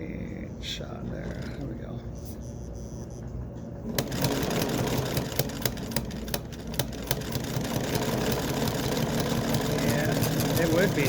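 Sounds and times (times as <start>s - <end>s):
sewing machine whirring: 3.9s - 11.0s.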